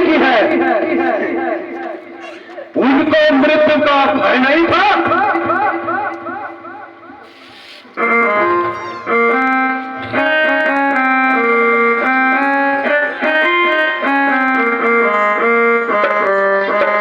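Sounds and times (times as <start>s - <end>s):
keyboard melody of sustained notes: 8.0s - 17.0s.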